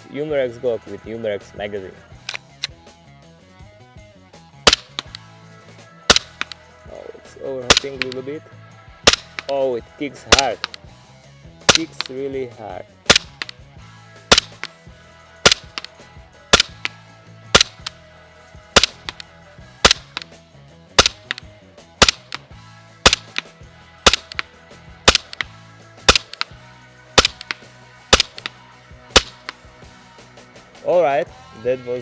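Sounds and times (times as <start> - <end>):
airsoft pistol shots: 4.7 - 5.2, 6.1 - 6.6, 7.7 - 8.2, 9.1 - 9.5, 10.3 - 10.8, 11.7 - 12.1, 13.1 - 13.5, 14.3 - 14.7, 15.5 - 15.9, 16.6 - 16.9, 17.6 - 17.9, 18.8 - 19.2, 19.8 - 20.2, 21.0 - 21.4, 22.0 - 22.4, 23.1 - 23.4, 24.1 - 24.4, 25.1 - 25.5, 26.1 - 26.4, 27.2 - 27.6, 28.2 - 28.5, 29.2 - 29.5.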